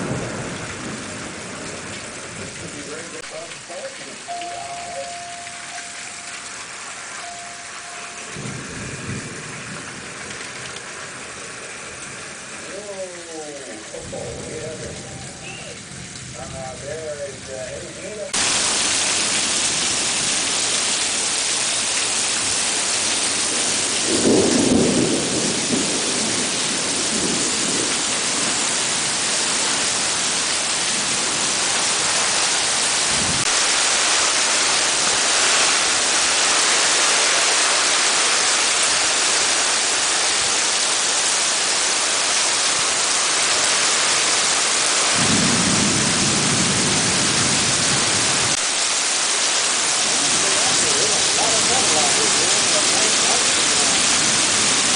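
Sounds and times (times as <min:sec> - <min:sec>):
heavy rain pouring: 0:00.0 - 0:54.9
thunder: 0:08.3 - 0:10.5, 0:24.0 - 0:28.0, 0:45.1 - 0:48.6.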